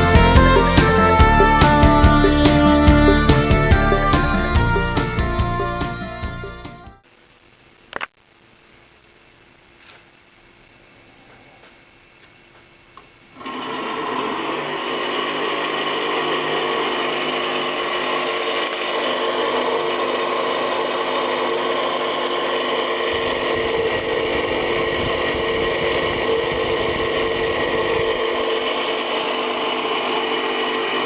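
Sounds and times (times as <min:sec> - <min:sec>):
small fan motor humming: 0:08.6 - 0:31.0.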